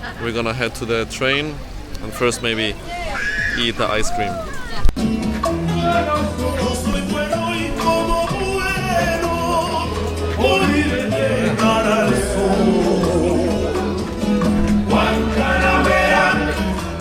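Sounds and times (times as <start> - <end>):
steady bass line: 5.0 - 17.0
person singing: 5.4 - 17.0.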